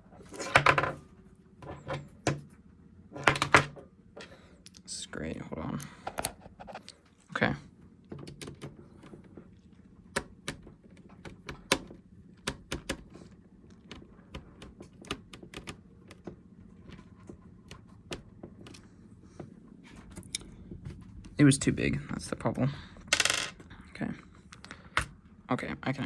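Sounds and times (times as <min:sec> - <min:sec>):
hand tools tapping on laptop: 0:10.2 - 0:13.2.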